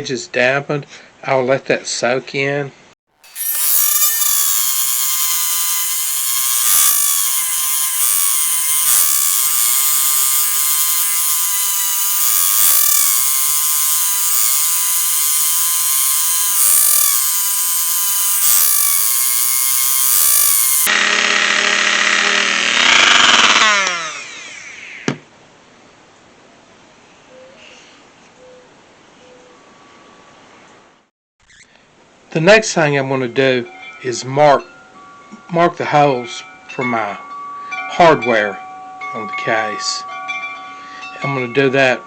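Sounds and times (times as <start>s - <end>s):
rotary tool whining: 3.2s - 25.0s.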